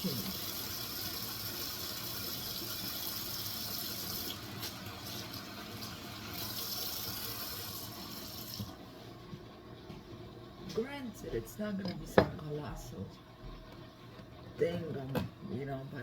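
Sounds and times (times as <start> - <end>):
tap running water into sink: 0.0 - 8.8.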